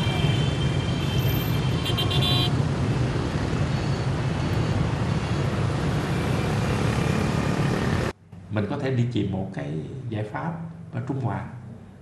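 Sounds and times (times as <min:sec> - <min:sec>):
vehicle horn: 0:00.0 - 0:02.6
traffic rumble: 0:00.0 - 0:12.0.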